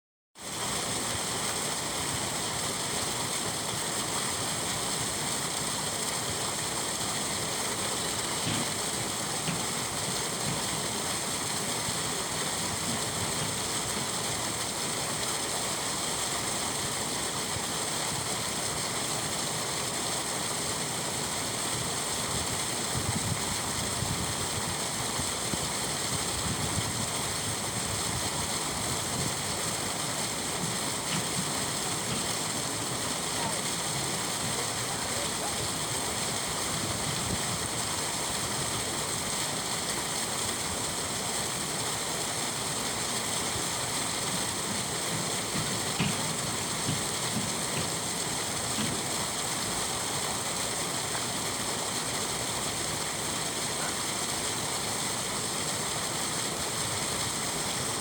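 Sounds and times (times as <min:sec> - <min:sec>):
water rushing and churning: 0:00.4 - 0:58.0.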